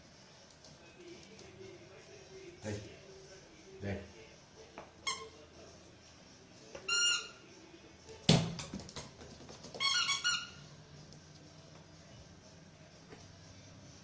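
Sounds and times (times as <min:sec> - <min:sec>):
squeaky rubber toy squeaks: 0:05.0 - 0:05.4, 0:06.9 - 0:07.4, 0:09.8 - 0:10.6.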